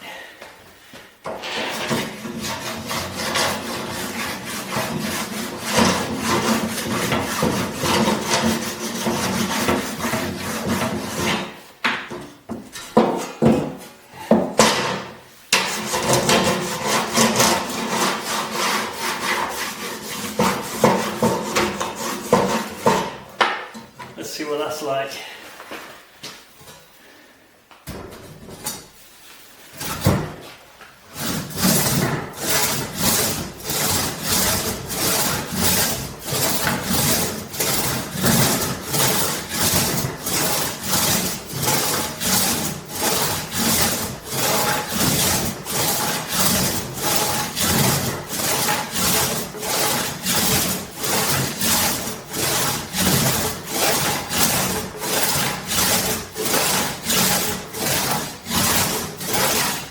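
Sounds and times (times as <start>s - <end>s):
crosscut saw rasping through wood: 1.5s - 11.6s, 15.6s - 23.2s, 31.1s - 59.9s.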